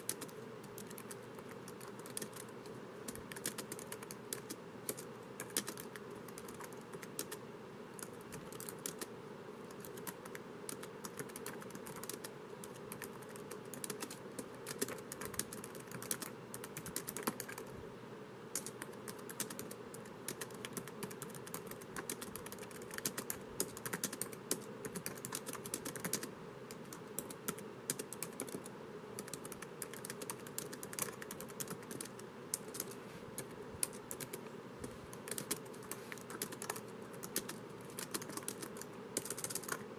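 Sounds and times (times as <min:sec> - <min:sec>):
typing on laptop keyboard: 0:00.0 - 0:07.4, 0:08.0 - 0:09.1, 0:09.7 - 0:17.7, 0:18.5 - 0:34.5, 0:35.1 - 0:39.9
faint steady hum: 0:00.0 - 0:39.9.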